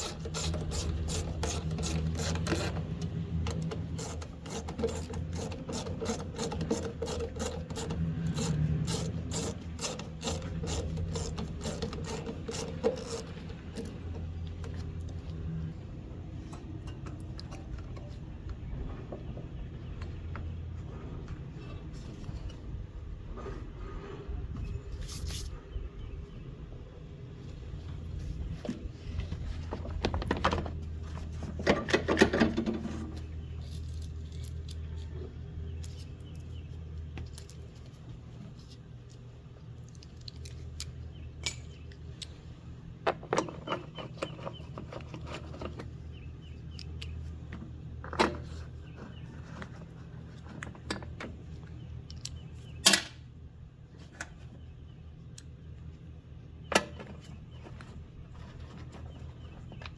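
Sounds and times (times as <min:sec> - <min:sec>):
metallic clicks of tools and parts: 0:39.8 - 0:42.4, 0:52.0 - 0:53.2.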